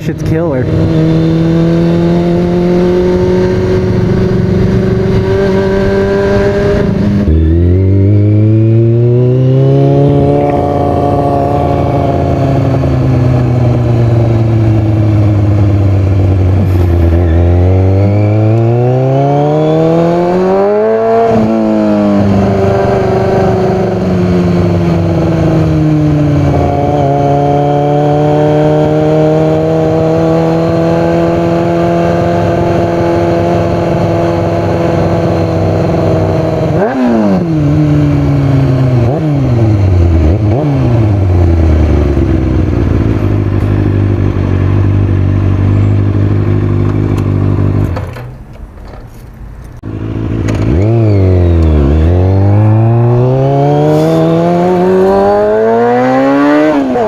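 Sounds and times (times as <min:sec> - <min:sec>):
motorcycle exhaust: 0:00.6 - 0:48.0, 0:49.8 - 0:57.0.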